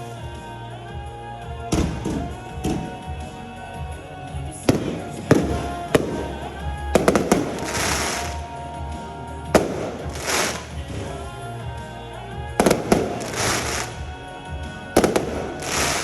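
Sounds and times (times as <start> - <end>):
music: 0.0 - 16.0
fireworks bangs: 4.6 - 8.6, 9.5 - 11.4, 12.6 - 14.1, 14.9 - 16.0
fireworks crackling and hissing: 4.6 - 11.9, 12.6 - 16.0.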